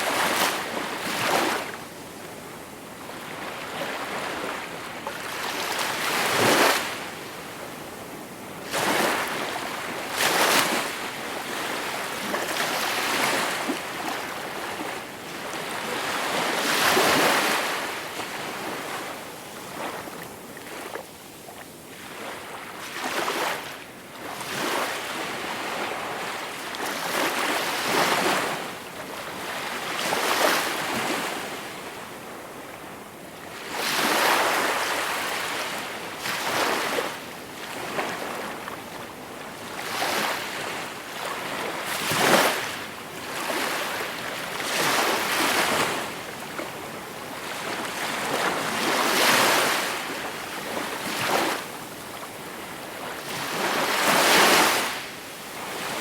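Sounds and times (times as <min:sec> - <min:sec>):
small waves breaking on shore: 0:00.0 - 0:01.8, 0:33.3 - 0:56.0.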